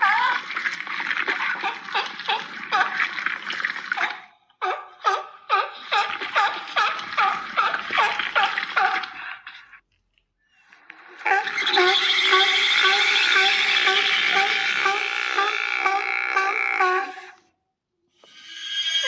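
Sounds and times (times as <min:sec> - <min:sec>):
monster squeals: 0:11.1 - 0:17.4.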